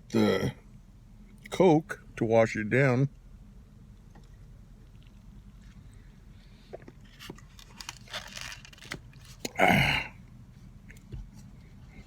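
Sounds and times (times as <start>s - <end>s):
faint chewing: 3.9s - 6.9s
fast-food packaging rustling: 7.0s - 9.5s.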